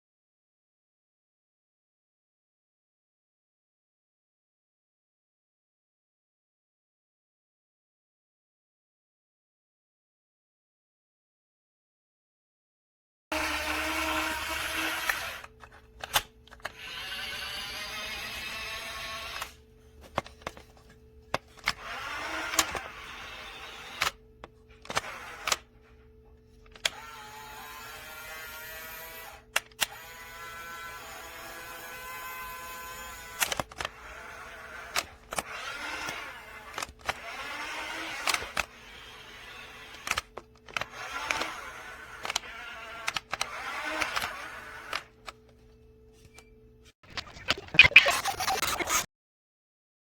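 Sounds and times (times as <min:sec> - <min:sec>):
small electric motors whirring: 0:13.3 - 0:20.6, 0:21.4 - 0:25.7, 0:26.7 - 0:45.4, 0:47.2 - 0:49.1.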